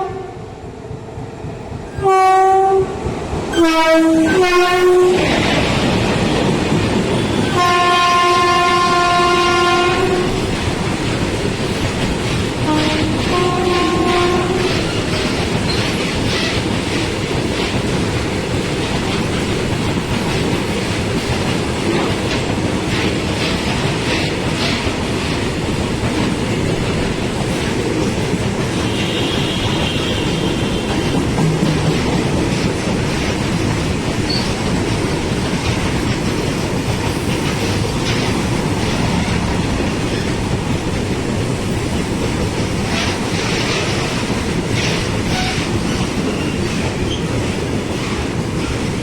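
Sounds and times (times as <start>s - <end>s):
train horn blasts: 0.0s - 0.5s, 2.0s - 5.2s, 7.1s - 10.4s, 12.6s - 15.1s, 28.7s - 31.8s, 45.3s - 46.6s
train wheels clattering over rail joints: 1.2s - 49.0s.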